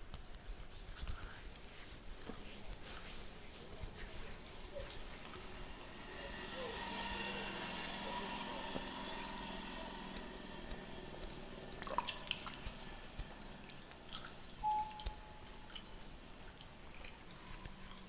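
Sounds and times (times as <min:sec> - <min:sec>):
brief clear tone: 0:14.6 - 0:15.6.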